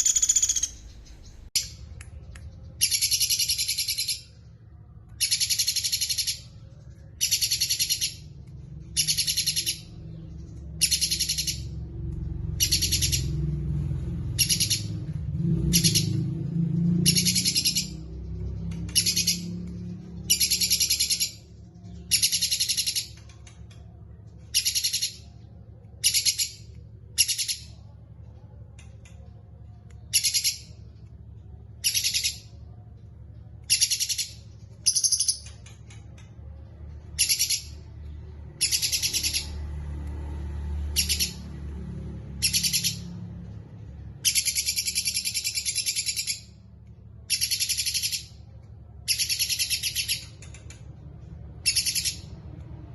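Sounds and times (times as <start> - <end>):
songbird trilling: 0.0 - 1.8, 38.6 - 39.6, 49.1 - 50.5, 51.6 - 52.3.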